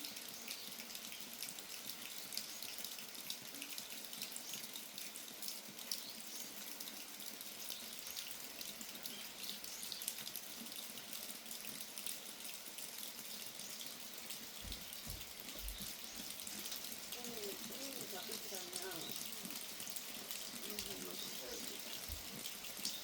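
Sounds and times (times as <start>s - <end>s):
steady rain falling: 0.0s - 23.0s
dull low thuds: 14.6s - 15.9s.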